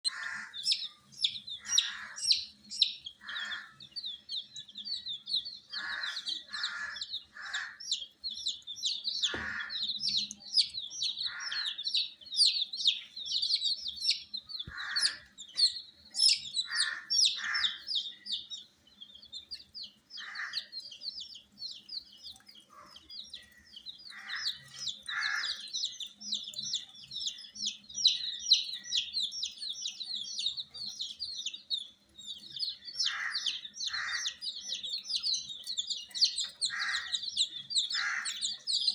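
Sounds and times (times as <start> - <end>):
coarse low chick calls: 0.0 - 18.6, 32.6 - 38.9
baby chicks peeping: 0.0 - 38.9.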